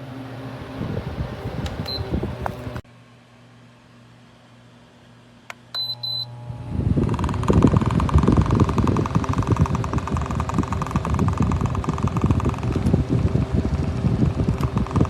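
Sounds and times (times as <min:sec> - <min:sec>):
fan rush of air: 0:00.0 - 0:15.0
fan switch click: 0:01.6 - 0:02.8, 0:06.9 - 0:15.0.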